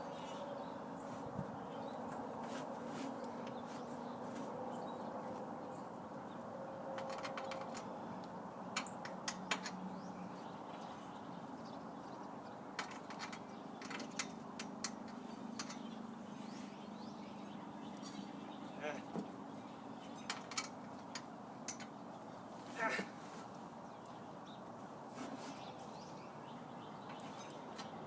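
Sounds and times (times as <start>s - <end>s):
sharp clicks and knocks: 7.0s - 9.8s, 12.8s - 16.0s, 20.2s - 22.0s.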